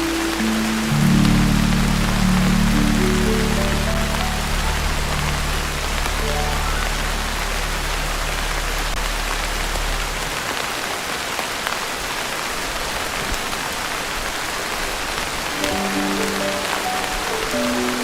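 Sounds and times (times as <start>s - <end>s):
heavy rain on a tin roof: 0.0s - 18.0s
low held music note: 0.6s - 10.2s.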